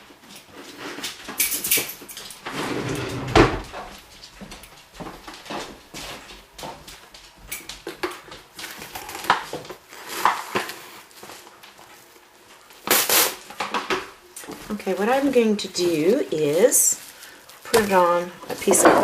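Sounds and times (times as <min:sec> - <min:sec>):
kitchen utensils clinking: 0:01.3 - 0:03.2, 0:17.7 - 0:19.0.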